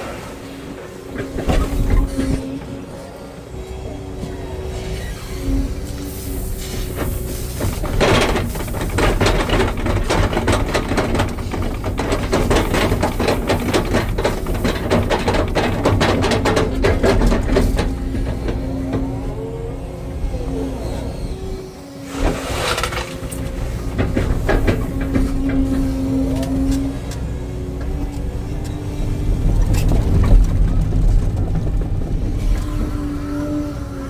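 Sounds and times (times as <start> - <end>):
excavator running: 0.0 - 34.0
dense clattering rattle: 6.4 - 19.1, 22.1 - 26.8, 27.8 - 34.0.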